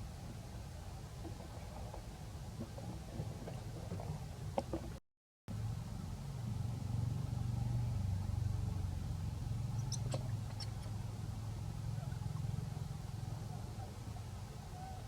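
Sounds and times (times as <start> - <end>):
low motor hum: 1.2 - 15.0.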